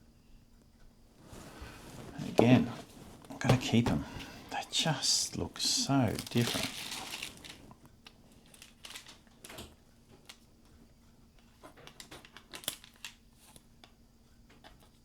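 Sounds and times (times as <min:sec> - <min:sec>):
faint steady hum: 0:00.0 - 0:15.0
paper rustling: 0:01.2 - 0:07.8.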